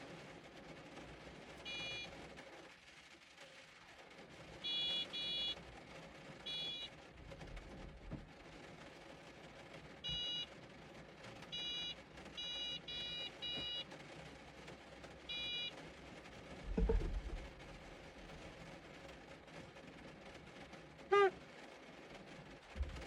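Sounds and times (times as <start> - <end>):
high-pitched electronic horn beeps: 1.7 - 2.1, 4.7 - 5.6, 6.5 - 6.9, 15.3 - 15.7, 21.1 - 21.4
dull thump: 16.7 - 17.5.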